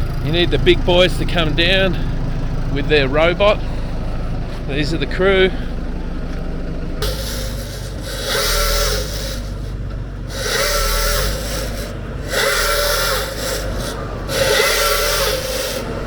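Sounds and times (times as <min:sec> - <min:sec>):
machine whine: 0:00.0 - 0:16.0
tree-removal machine engine surging: 0:00.0 - 0:16.0
noisy hiss: 0:07.0 - 0:16.0.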